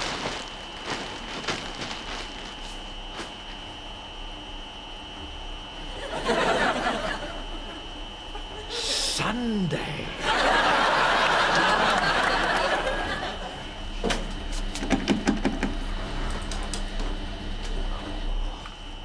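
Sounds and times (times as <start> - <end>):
studio audience laughing: 5.9 - 8.9, 10.1 - 13.8.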